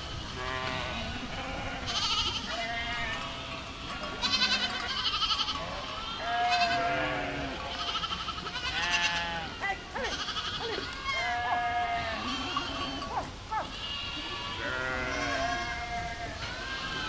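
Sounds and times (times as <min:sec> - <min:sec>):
goats bleating: 0:00.2 - 0:17.0.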